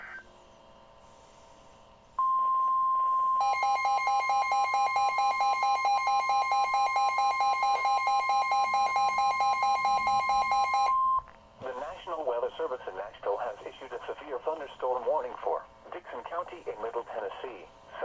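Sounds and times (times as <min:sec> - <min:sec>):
rapid pulsing beep: 0:02.2 - 0:11.2.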